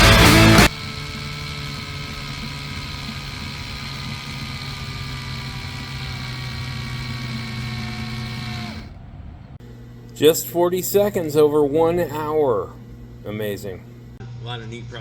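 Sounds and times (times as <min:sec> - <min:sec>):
cordless screwdriver motor whine: 0:00.0 - 0:08.9.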